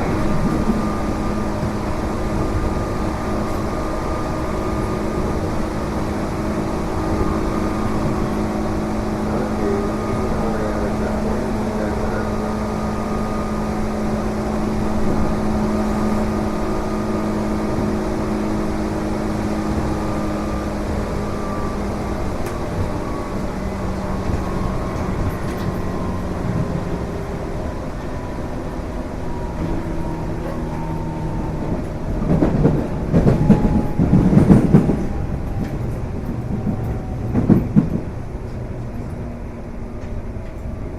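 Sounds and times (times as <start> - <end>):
electric train running rumble: 0.0 - 40.9.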